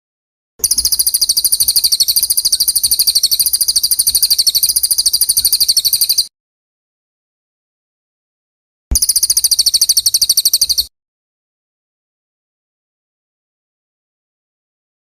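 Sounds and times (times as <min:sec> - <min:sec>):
songbird chirping trill: 0:00.6 - 0:06.3, 0:08.9 - 0:10.9.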